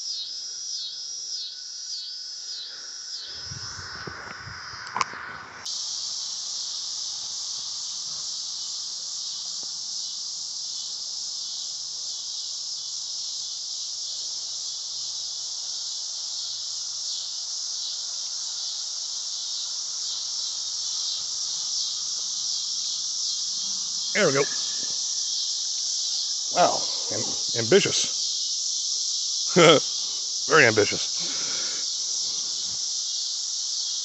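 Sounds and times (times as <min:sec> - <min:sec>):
insects buzzing: 0:00.0 - 0:34.0.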